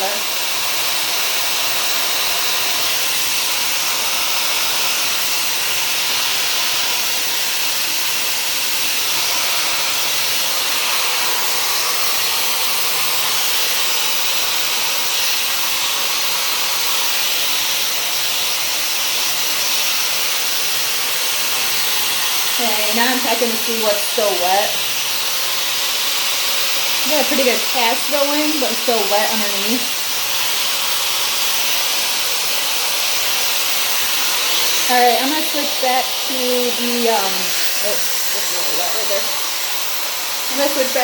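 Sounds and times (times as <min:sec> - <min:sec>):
hair dryer air rushing: 0:00.0 - 0:41.0.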